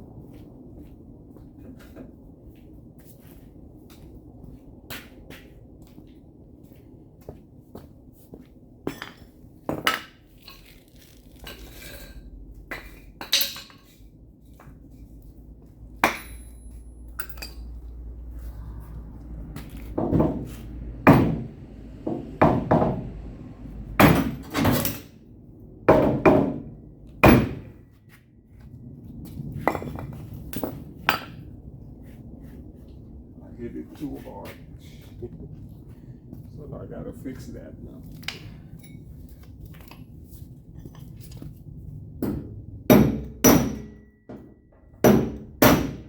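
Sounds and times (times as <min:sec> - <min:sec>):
sledgehammer clanking on metal: 0:16.0 - 0:17.7, 0:20.0 - 0:21.5, 0:24.0 - 0:25.1, 0:42.2 - 0:44.0.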